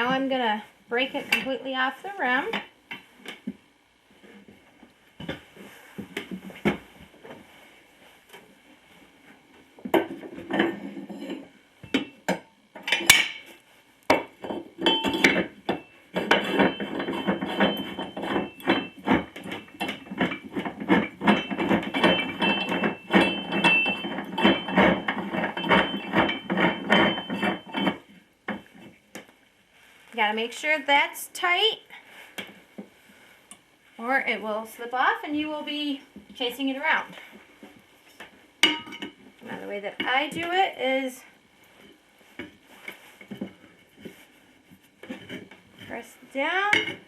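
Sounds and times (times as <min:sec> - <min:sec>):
metal tire changer clanking: 0:20.8 - 0:28.0.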